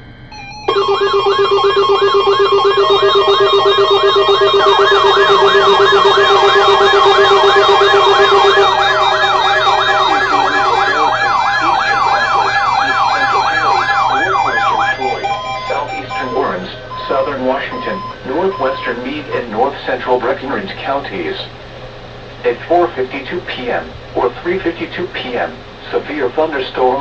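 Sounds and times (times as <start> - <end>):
warbling siren tone: 0.0 - 19.4
steady alert tones: 0.0 - 19.6.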